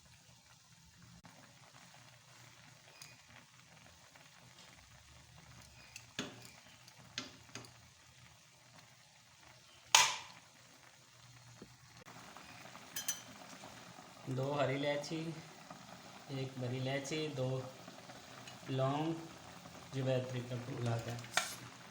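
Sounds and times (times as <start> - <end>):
pot simmering: 0.0 - 21.9
metal tongs clicking on pan: 9.9 - 10.3, 13.0 - 13.3, 20.8 - 21.6.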